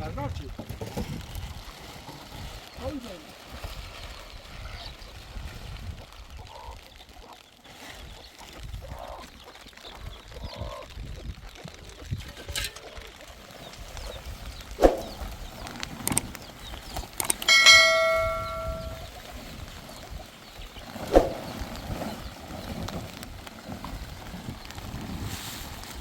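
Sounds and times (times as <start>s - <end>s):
ringing metallic strike: 17.4s - 19.1s.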